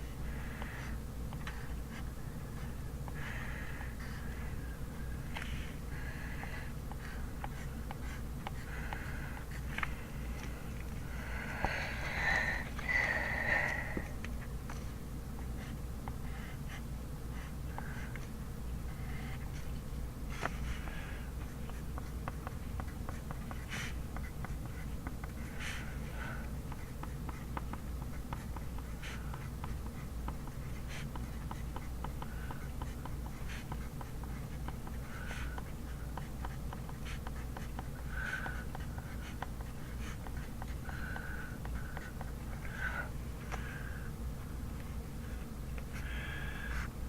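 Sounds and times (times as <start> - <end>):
low room hum: 0.0 - 47.0
pen scratching on paper: 20.3 - 25.9, 26.7 - 42.8.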